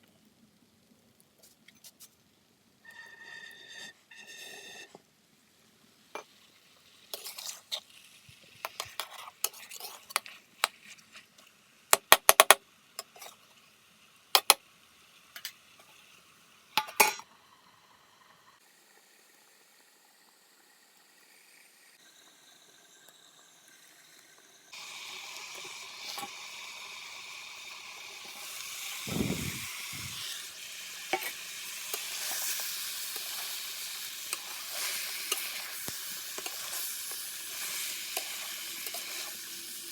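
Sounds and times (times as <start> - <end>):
food sizzling in a pan: 2.4 - 39.9
metal utensils clinking on pot: 16.8 - 17.2, 34.2 - 39.3.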